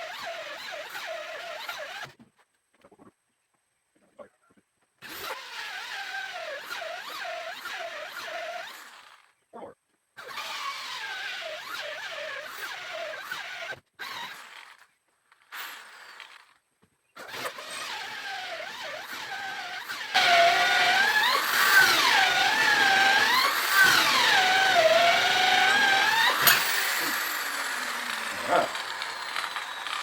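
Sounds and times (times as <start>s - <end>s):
electric drill boring into wood: 0.0s - 2.2s, 5.0s - 9.3s, 10.2s - 16.6s, 17.2s - 30.0s.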